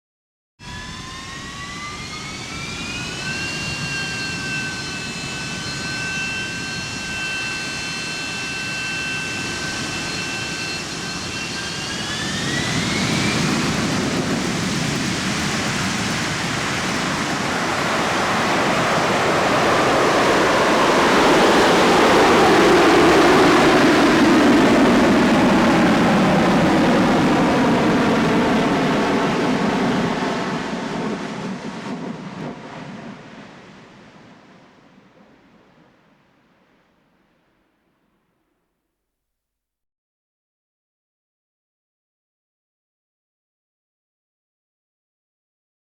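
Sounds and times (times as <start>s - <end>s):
loud jet roar: 0.6s - 35.8s
jet engine whine: 0.6s - 37.0s.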